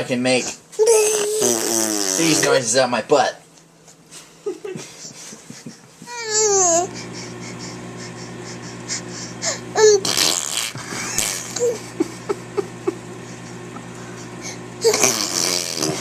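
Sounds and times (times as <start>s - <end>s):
steady low hum: 0.0s - 16.0s
baby squeaking and babbling: 0.8s - 1.8s
baby blowing a raspberry: 0.9s - 2.6s, 9.0s - 11.8s, 14.4s - 16.0s.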